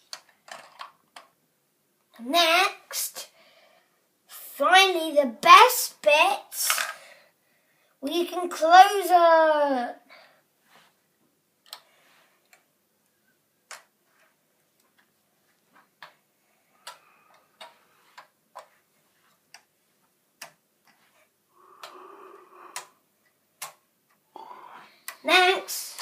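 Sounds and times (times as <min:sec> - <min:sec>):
plastic pieces clicking: 0:00.1 - 0:01.3.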